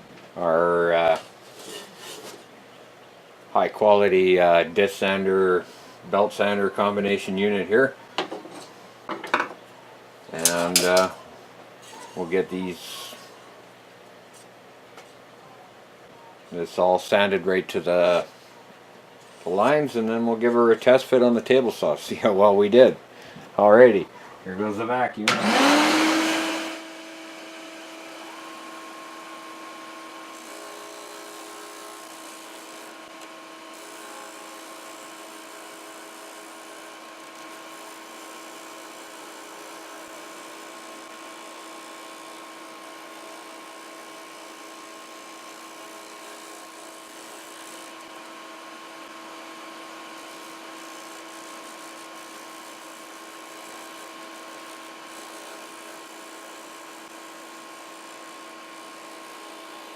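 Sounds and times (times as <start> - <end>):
sander motor whining: 25.3 - 59.9.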